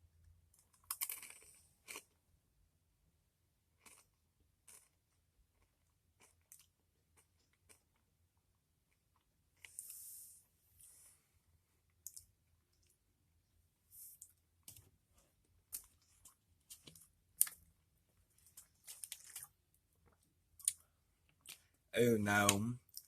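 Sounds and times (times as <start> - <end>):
person chewing crunchy snack: 0.8 - 2.2, 3.8 - 4.1, 4.7 - 5.0, 18.4 - 21.8.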